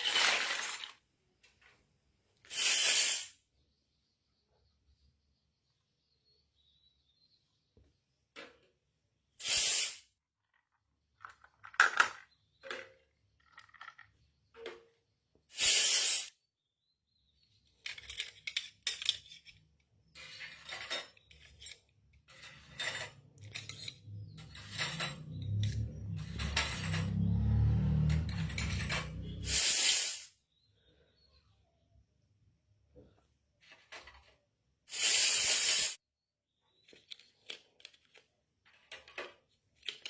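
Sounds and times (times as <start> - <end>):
toy kitchenware clinking: 0.0 - 1.1, 10.5 - 15.1, 17.6 - 27.3, 27.9 - 29.9, 36.8 - 40.0.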